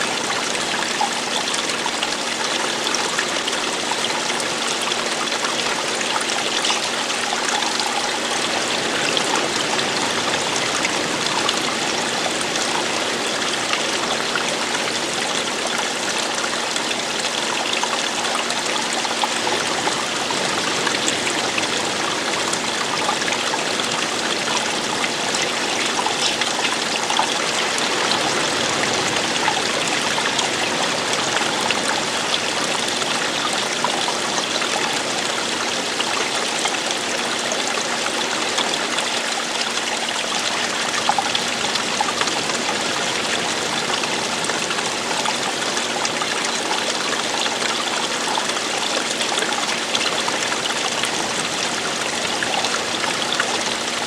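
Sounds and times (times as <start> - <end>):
water splashing over rocks: 0.0 - 54.0.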